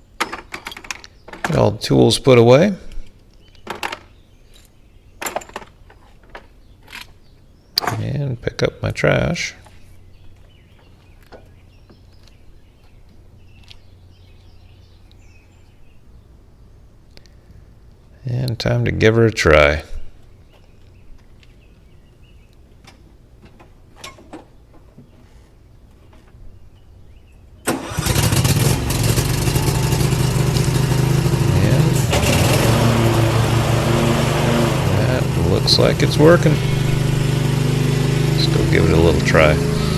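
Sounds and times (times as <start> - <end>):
mower engine starting and running: 27.7 - 39.9
steady low hum: 34.7 - 39.9.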